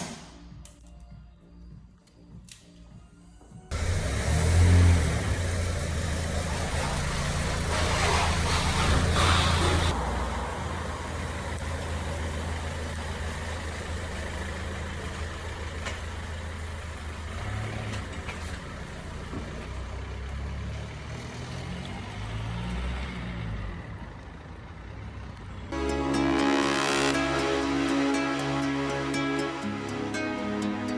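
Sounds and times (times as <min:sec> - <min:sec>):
vehicle engine humming: 0:03.7 - 0:30.9.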